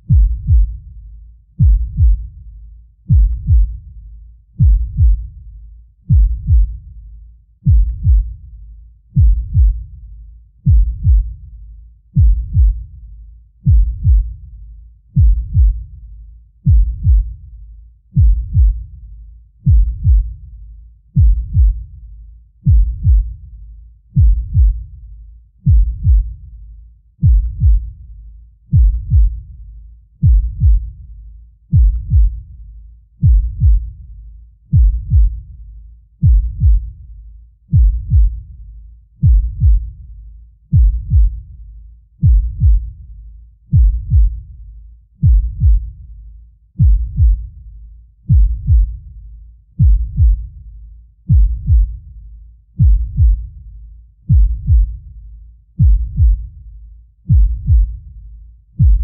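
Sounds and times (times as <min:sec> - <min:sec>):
deep heartbeat thumps: 0:00.0 - 0:04.0, 0:04.6 - 0:07.0, 0:07.6 - 0:08.5, 0:09.1 - 0:10.0, 0:10.6 - 0:11.5, 0:12.1 - 0:13.0, 0:13.6 - 0:14.5, 0:15.1 - 0:16.0, 0:16.6 - 0:17.5, 0:18.1 - 0:19.0, 0:19.6 - 0:20.5, 0:21.1 - 0:22.0, 0:22.6 - 0:23.5, 0:24.2 - 0:25.0, 0:25.6 - 0:26.5, 0:27.2 - 0:28.1, 0:28.7 - 0:29.6, 0:30.2 - 0:31.1, 0:31.7 - 0:32.6, 0:33.2 - 0:35.6, 0:36.2 - 0:37.1, 0:37.7 - 0:38.6, 0:39.2 - 0:40.1, 0:40.7 - 0:41.6, 0:42.2 - 0:44.6, 0:45.2 - 0:46.1, 0:46.8 - 0:47.6, 0:48.3 - 0:49.2, 0:49.8 - 0:50.7, 0:51.3 - 0:52.2, 0:52.8 - 0:53.7, 0:54.3 - 0:55.2, 0:55.8 - 0:56.7, 0:57.3 - 0:58.2, 0:58.8 - 0:59.0.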